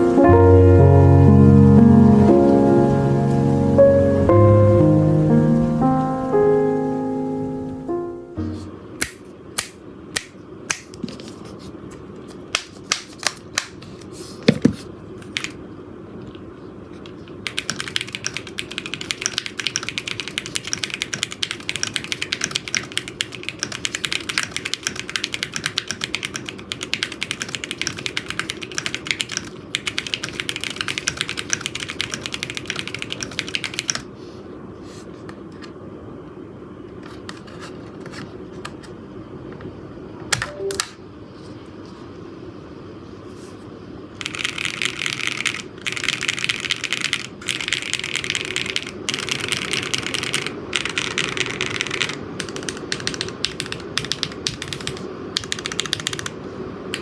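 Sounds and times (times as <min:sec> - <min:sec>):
mechanical keyboard typing: 0:15.2 - 0:15.6, 0:17.0 - 0:34.1, 0:44.2 - 0:57.0.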